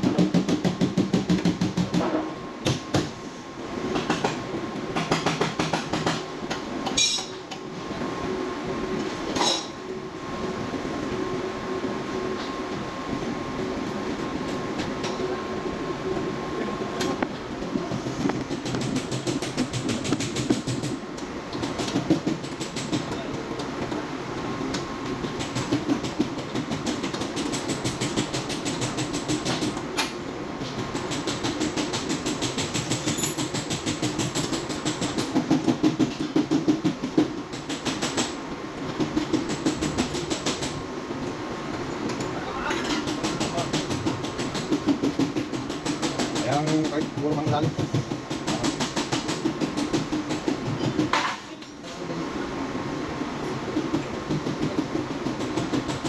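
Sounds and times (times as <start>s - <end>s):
rapid mechanical clatter: 17.0s - 24.0s, 24.7s - 40.9s, 42.8s - 51.4s, 53.2s - 56.0s.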